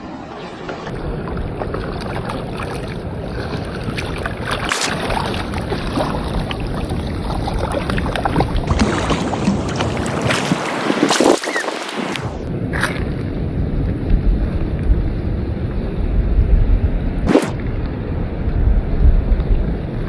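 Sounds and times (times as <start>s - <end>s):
water rushing around a boat: 0.0s - 20.0s
wind around a boat: 0.0s - 20.0s
short sharp noises: 17.3s - 17.6s.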